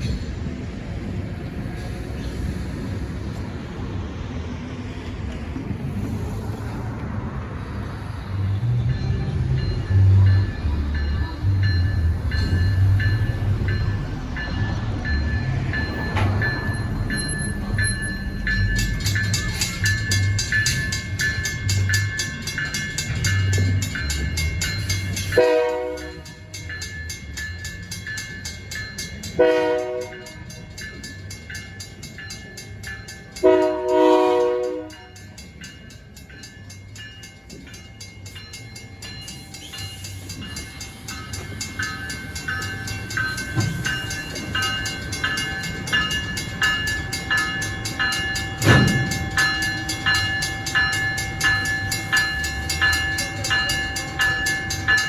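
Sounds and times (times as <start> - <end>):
train running: 0.0 - 55.0
locomotive horn blasts: 25.4 - 26.4, 29.4 - 30.4, 33.4 - 35.1.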